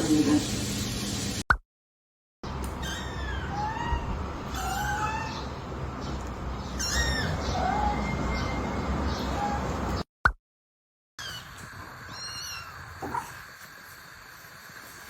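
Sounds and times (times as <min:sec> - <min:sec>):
kittens mewing: 0:02.7 - 0:05.6, 0:06.7 - 0:08.6, 0:12.1 - 0:13.4.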